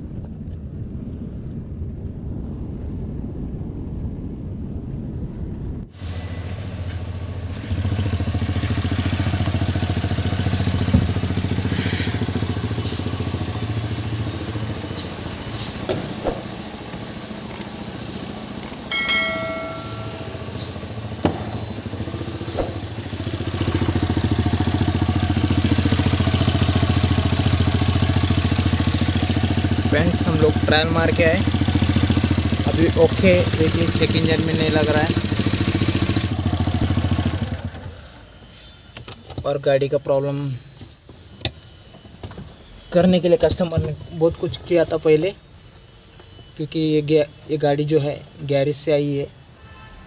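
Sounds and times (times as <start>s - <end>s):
car engine running: 6.6s - 38.5s
brief pitched tone: 18.8s - 28.6s, 36.8s - 47.4s.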